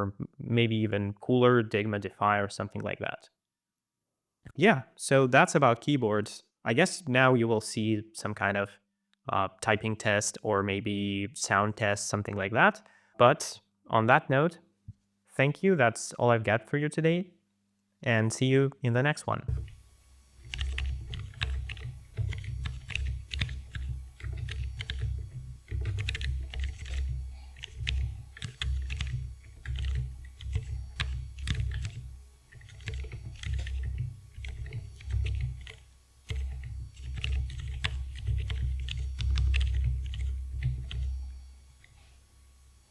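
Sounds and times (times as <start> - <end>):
fast typing on mechanical keyboard: 20.4 - 41.9.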